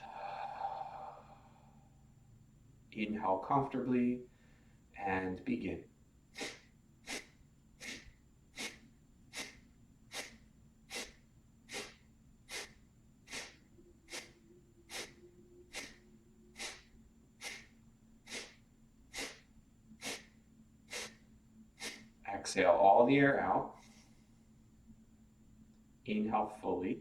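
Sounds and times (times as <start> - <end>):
forceful exhalations through nose: 0.0 - 1.8, 6.4 - 21.2, 21.8 - 22.2.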